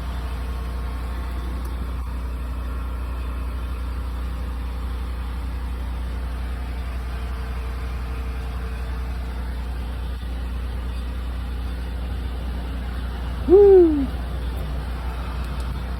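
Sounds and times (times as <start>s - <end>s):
hoot-like call: 13.4s - 14.2s.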